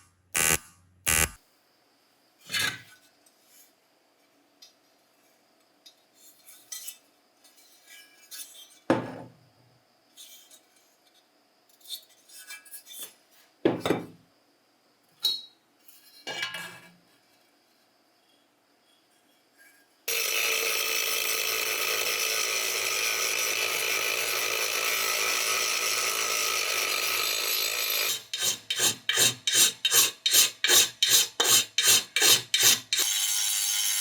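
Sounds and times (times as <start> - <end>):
abrasive scrubbing of rusty metal: 28.0 - 33.0.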